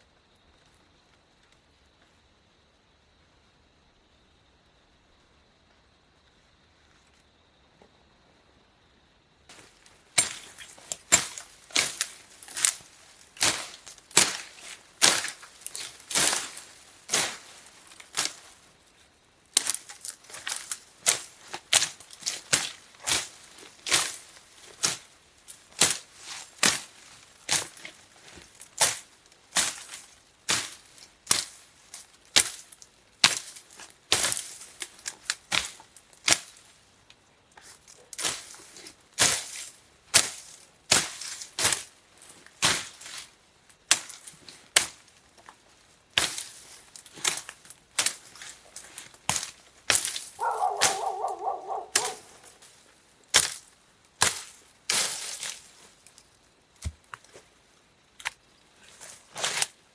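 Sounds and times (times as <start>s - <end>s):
blade chopping into wood: 13.4s - 15.3s, 49.3s - 52.6s.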